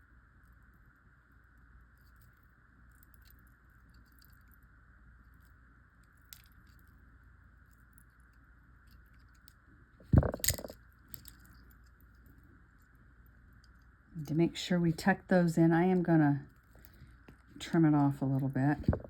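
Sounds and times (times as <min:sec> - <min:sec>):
clicks of wire and pliers: 0:10.1 - 0:11.7.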